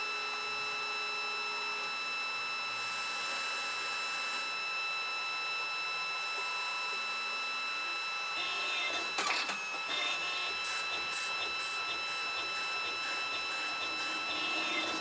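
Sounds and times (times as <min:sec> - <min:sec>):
lathe machine whine: 0:00.0 - 0:15.0.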